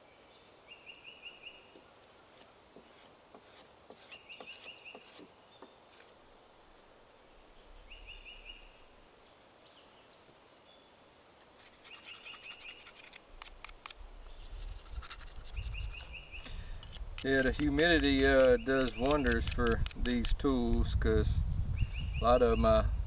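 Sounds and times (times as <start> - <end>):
hand tool scraping wood: 2.2 - 6.2, 11.6 - 20.9
chirping trill: 14.2 - 16.5.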